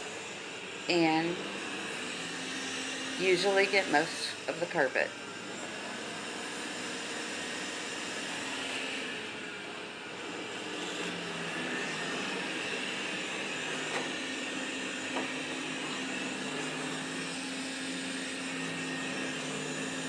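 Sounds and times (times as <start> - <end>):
robot vacuum running on carpet: 0.0 - 20.0.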